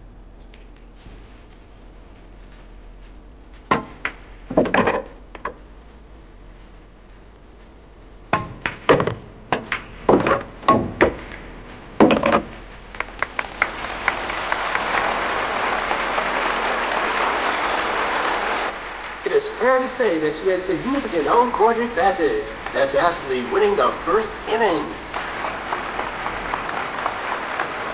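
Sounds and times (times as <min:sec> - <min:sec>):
pool balls clacking: 0:00.0 - 0:07.2, 0:08.2 - 0:27.9
applause: 0:12.8 - 0:27.9.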